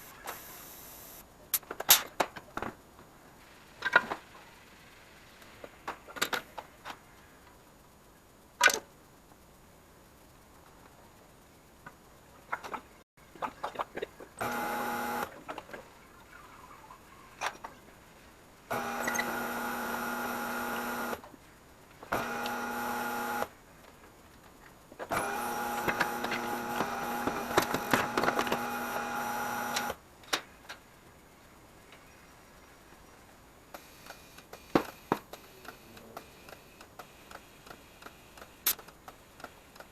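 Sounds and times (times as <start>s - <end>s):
turntable motor running: 14.4s - 15.3s, 18.7s - 21.2s, 22.1s - 23.5s, 25.1s - 30.0s.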